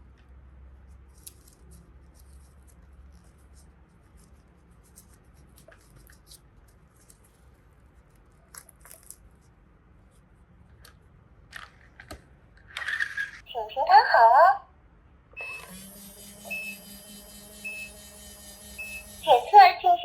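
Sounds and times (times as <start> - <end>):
plastic toys and packaging handled: 1.0 - 13.4
low hum: 15.4 - 20.0.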